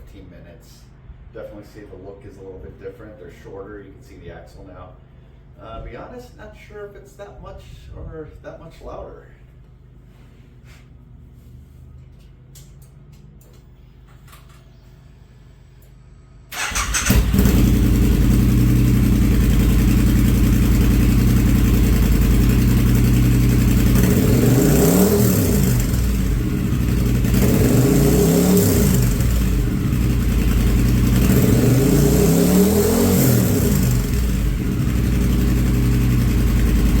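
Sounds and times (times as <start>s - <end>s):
motorcycle engine idling and revving: 16.6s - 37.0s.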